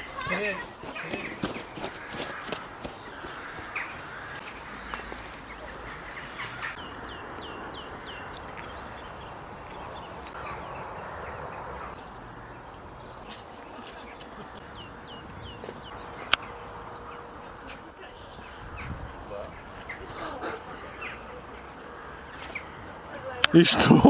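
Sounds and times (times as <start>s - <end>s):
birds chirping: 0.0s - 24.0s.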